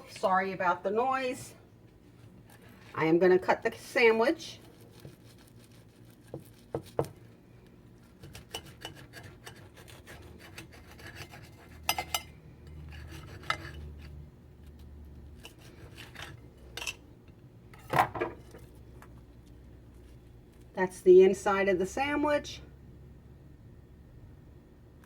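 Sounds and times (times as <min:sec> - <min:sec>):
knife rasping through toasted bread: 0:04.6 - 0:07.3, 0:08.0 - 0:14.2, 0:15.3 - 0:16.9.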